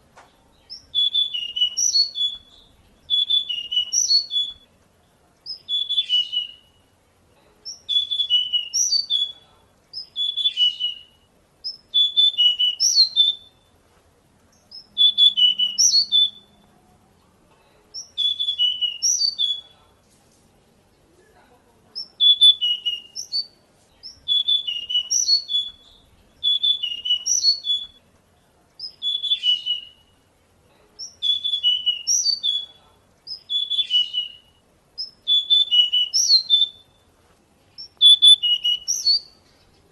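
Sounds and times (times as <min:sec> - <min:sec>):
bird singing warbling phrase: 0:00.5 - 0:04.7, 0:05.5 - 0:06.8, 0:07.6 - 0:13.7, 0:14.6 - 0:16.7, 0:17.9 - 0:19.8, 0:21.9 - 0:28.0, 0:28.8 - 0:30.3, 0:31.0 - 0:37.0, 0:37.8 - 0:39.4.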